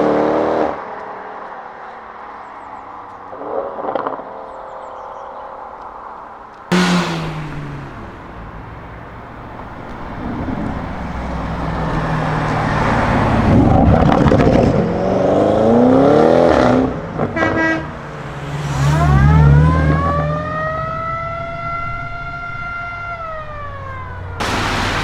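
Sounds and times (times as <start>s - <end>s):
car engine accelerating hard: 6.7s - 17.6s, 18.2s - 21.2s, 24.4s - 25.0s.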